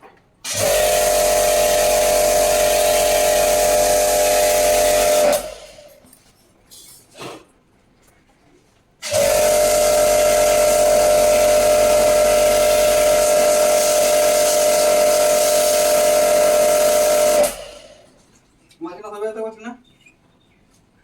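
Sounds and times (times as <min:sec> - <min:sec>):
pressure washer motor whine: 0:00.4 - 0:06.0, 0:09.0 - 0:18.1
water spray hissing: 0:09.1 - 0:18.0.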